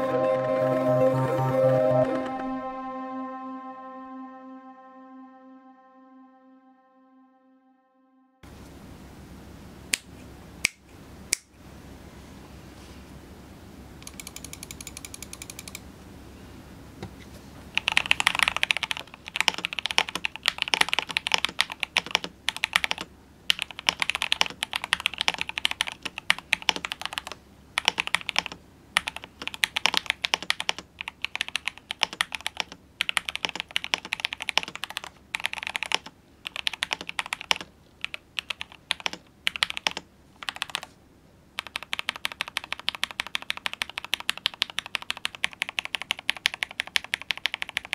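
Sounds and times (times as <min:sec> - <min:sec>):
mechanical keyboard typing: 0:14.0 - 0:15.8, 0:17.8 - 0:40.9, 0:41.6 - 0:47.9.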